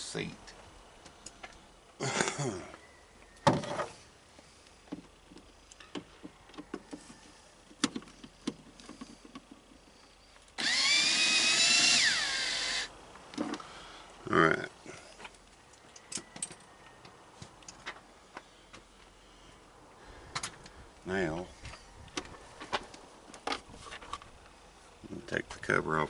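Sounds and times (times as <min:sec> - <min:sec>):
power drill whining: 0:10.6 - 0:12.9.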